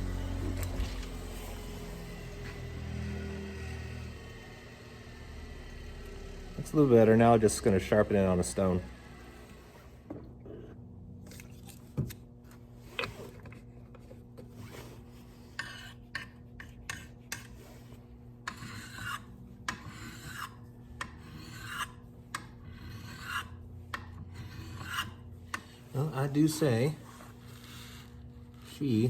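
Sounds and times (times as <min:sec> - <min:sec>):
sharpening stone scraping blade: 0:18.5 - 0:23.6, 0:24.3 - 0:25.6.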